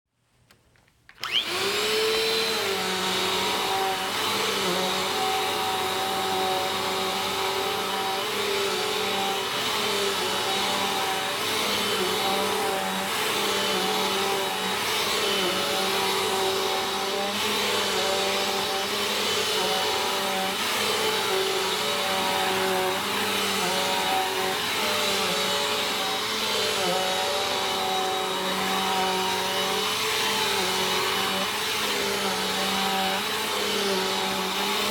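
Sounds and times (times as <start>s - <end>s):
vacuum cleaner motor whine: 1.1s - 34.9s.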